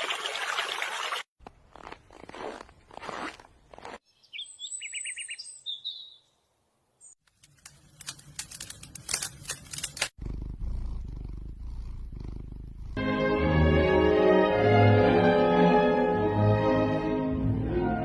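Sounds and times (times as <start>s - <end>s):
small bird chirping and trilling: 4.0s - 6.4s
sharp crackling clicks: 7.2s - 10.2s.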